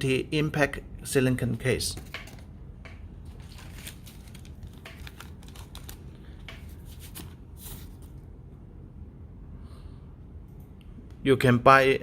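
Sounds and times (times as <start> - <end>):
hands handling plastic packaging: 3.2 - 8.2.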